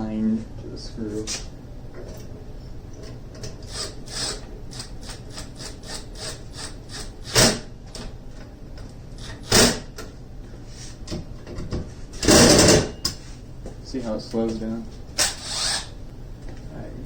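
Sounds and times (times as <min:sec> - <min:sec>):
cordless drill driving screws: 0:03.7 - 0:04.9, 0:15.2 - 0:15.9.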